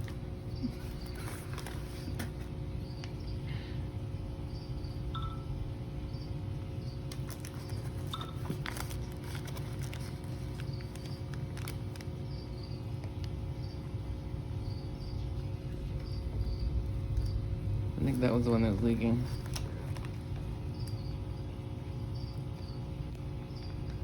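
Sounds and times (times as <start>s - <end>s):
steady low hum: 0.0s - 24.0s
faint high chirps: 4.5s - 7.0s
plastic crackles and clicks: 7.1s - 12.2s, 19.4s - 21.0s.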